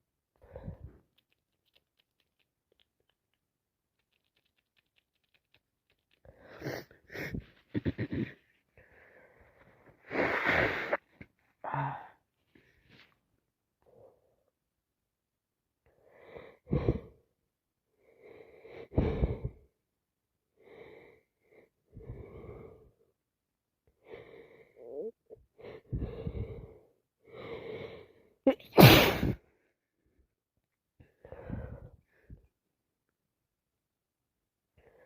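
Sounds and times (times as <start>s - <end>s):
woman sniffing and wheezing: 4.0s - 7.9s, 10.0s - 11.1s, 28.5s - 29.4s
woman sneezing: 28.5s - 29.4s.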